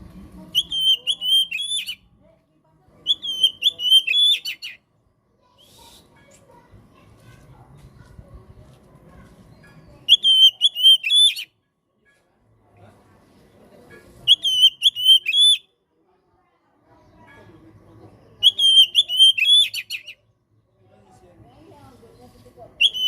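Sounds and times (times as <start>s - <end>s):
bird singing whistled notes: 0.6s - 2.0s, 3.0s - 4.8s, 9.5s - 11.5s, 14.2s - 15.7s, 18.3s - 20.2s, 22.8s - 23.0s.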